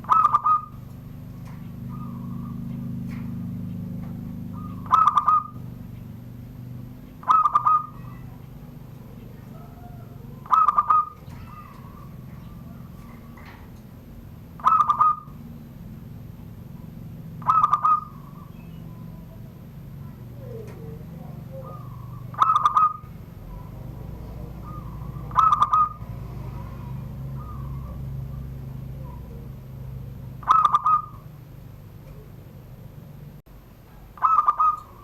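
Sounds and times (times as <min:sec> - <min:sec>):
dove cooing: 0:00.0 - 0:35.0.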